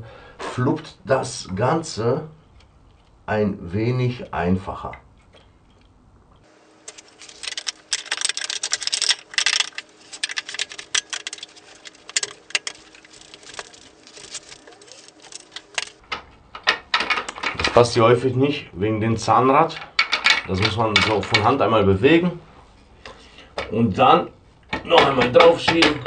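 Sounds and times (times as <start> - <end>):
metal parts clicking and clinking: 6.8 - 18.0, 19.8 - 21.6.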